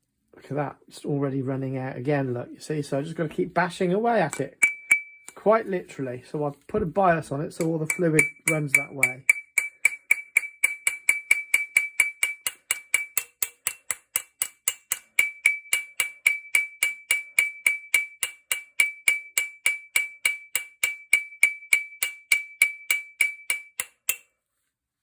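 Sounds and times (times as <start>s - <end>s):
small hammer tapping on metal: 4.3s - 5.4s, 7.6s - 24.3s.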